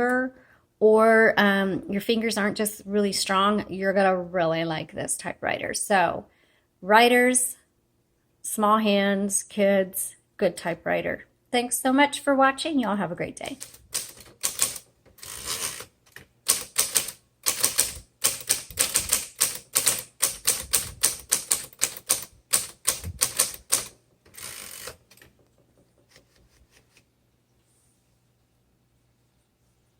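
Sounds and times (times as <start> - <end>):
manual typewriter typing: 13.5 - 25.5
typewriter rasping: 13.6 - 15.9, 16.5 - 25.3.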